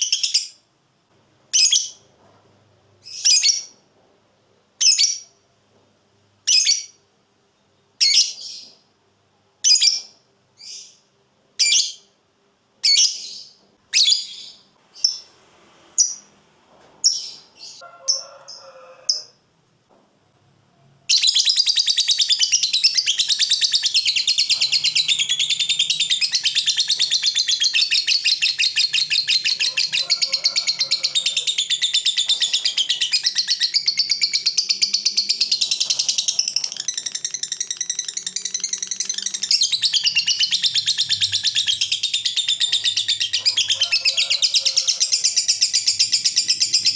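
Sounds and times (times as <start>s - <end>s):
lovebird chirping: 1.5s - 2.0s, 3.0s - 3.8s, 11.6s - 12.1s, 12.8s - 15.3s, 17.0s - 17.8s, 21.1s - 46.9s.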